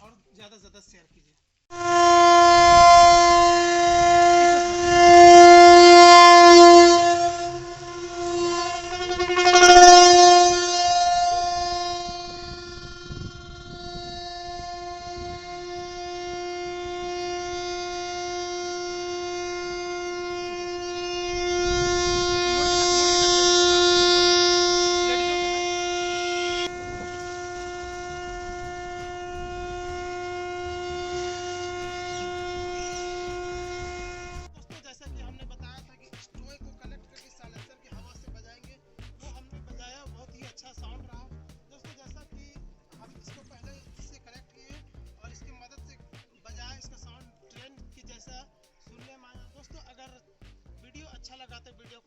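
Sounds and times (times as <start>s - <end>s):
exhaust whistle tone: 1.7s - 34.6s.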